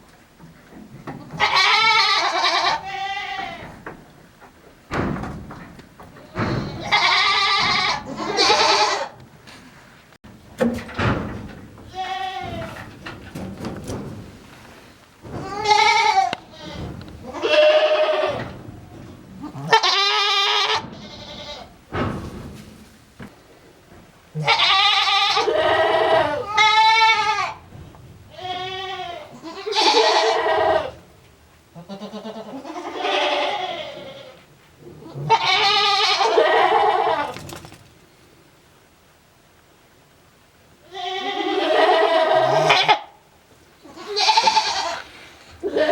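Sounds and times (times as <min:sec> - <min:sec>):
goat bleating: 0:01.3 - 0:03.7, 0:06.3 - 0:09.2, 0:11.9 - 0:12.8, 0:15.4 - 0:18.6, 0:19.4 - 0:21.7, 0:24.4 - 0:27.6, 0:28.3 - 0:31.0, 0:31.8 - 0:34.4, 0:35.0 - 0:37.4, 0:40.9 - 0:43.1, 0:43.8 - 0:45.9.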